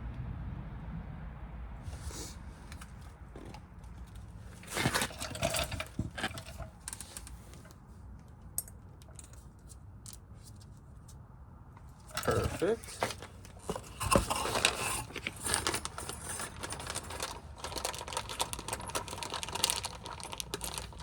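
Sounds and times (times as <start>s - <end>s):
metal clatter: 2.8s - 7.7s, 12.1s - 21.0s.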